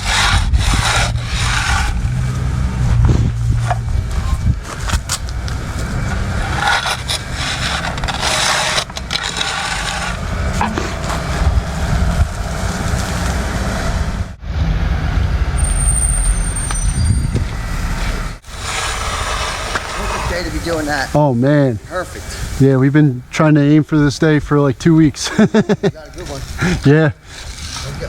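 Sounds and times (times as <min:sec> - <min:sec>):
scraping and clattering: 0:00.0 - 0:13.6.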